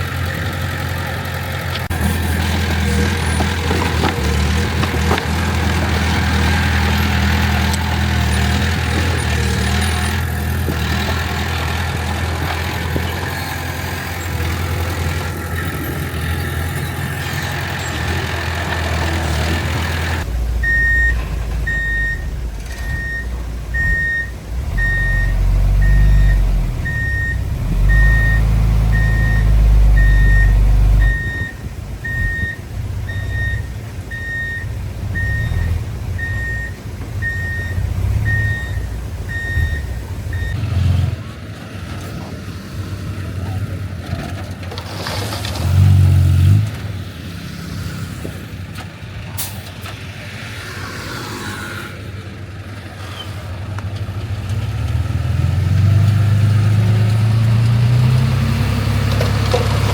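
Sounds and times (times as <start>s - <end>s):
deep engine rumble: 0.0s - 42.3s
diesel machinery running: 0.0s - 50.9s, 51.9s - 59.9s
reversing alarm beeping: 20.2s - 40.6s.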